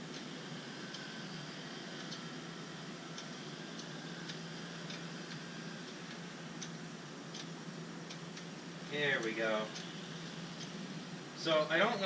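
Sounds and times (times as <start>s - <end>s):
steady low hum: 0.0s - 12.0s
faint light ticks: 2.0s - 2.3s.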